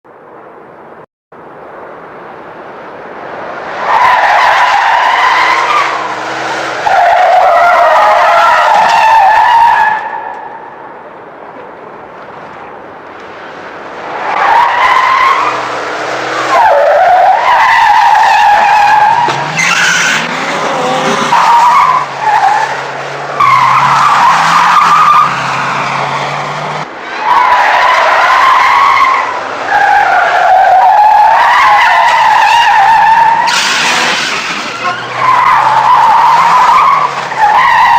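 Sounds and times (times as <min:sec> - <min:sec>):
tire screeching: 0:00.2 - 0:37.9.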